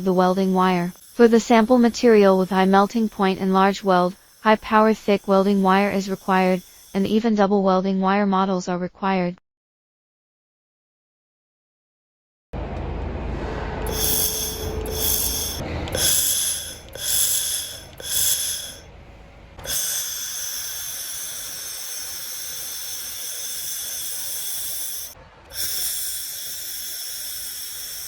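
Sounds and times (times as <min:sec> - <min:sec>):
laser welder hissing: 0:00.0 - 0:07.2, 0:13.9 - 0:18.9, 0:19.6 - 0:28.0.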